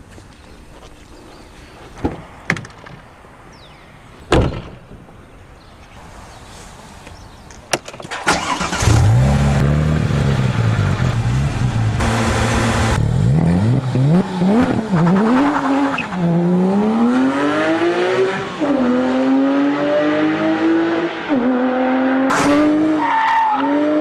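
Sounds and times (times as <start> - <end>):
thump: 4.3 - 5.1
car engine starting and idling: 8.1 - 16.2.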